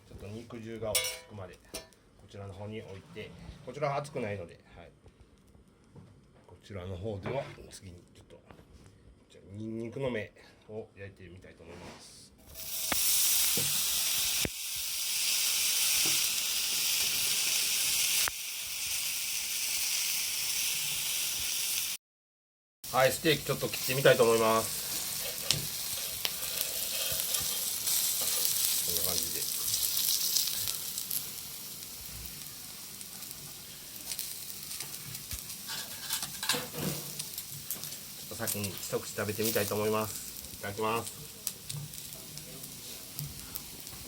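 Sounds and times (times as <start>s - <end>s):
food sizzling on griddle: 12.5s - 22.0s, 22.9s - 44.0s.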